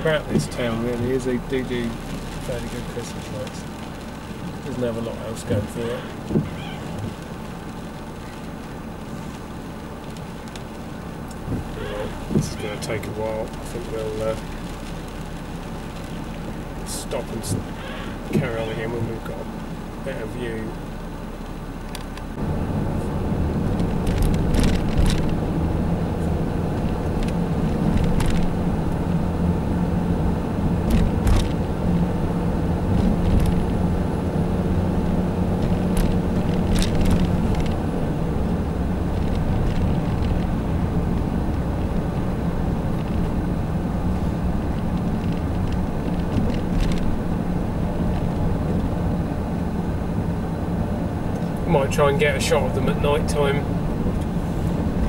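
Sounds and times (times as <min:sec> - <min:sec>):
vehicle engine and road noise: 0:00.0 - 0:55.0
clicks and rattles: 0:35.6 - 0:37.8, 0:44.7 - 0:47.2.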